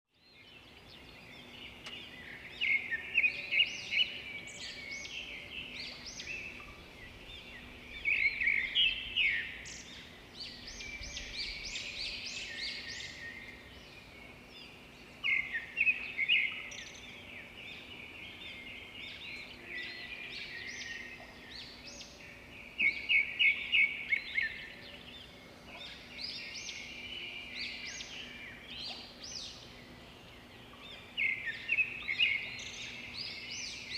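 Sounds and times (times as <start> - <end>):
songbirds chirping: 0.1 - 33.9.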